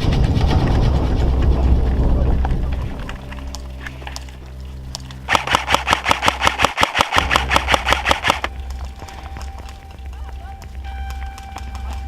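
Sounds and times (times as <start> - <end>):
airsoft gun rapid firing: 5.3 - 8.5.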